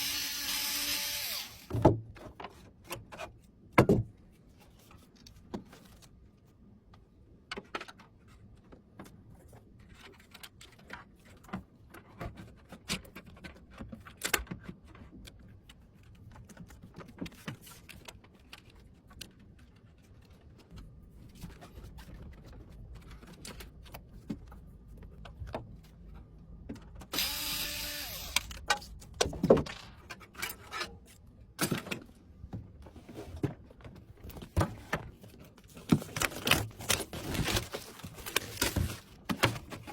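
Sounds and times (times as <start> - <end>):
small electric motor whirring: 0.0 - 1.7, 27.1 - 28.6.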